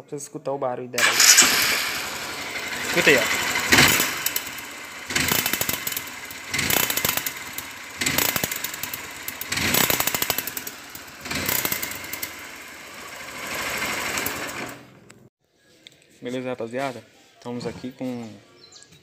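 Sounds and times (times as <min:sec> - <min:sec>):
engine ticking rattle: 0:01.0 - 0:15.3
motorcycle engine revving: 0:01.0 - 0:15.3.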